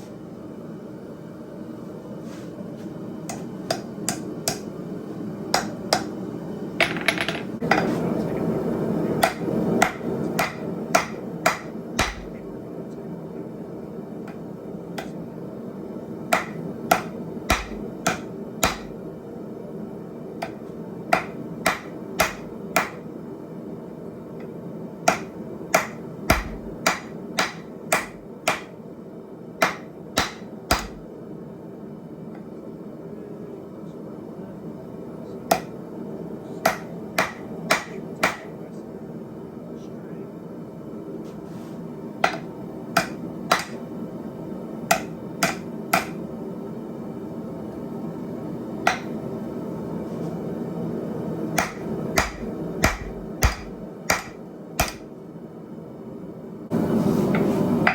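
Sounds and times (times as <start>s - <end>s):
hammer striking steel on anvil: 3.3s - 4.7s, 5.5s - 6.2s, 9.2s - 12.4s, 16.3s - 19.0s, 20.4s - 23.0s, 25.1s - 28.8s, 29.6s - 31.0s, 36.6s - 38.5s, 42.2s - 43.8s, 44.9s - 46.2s, 48.9s - 49.2s, 51.6s - 55.0s.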